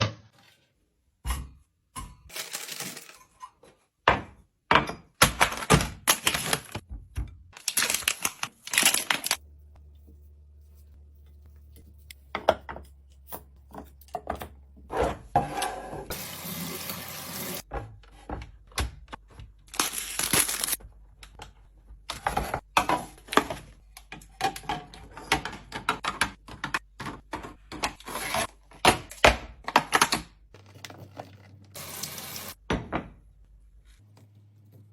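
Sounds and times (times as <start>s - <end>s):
pouring or rustling noise: 30.7s - 32.6s.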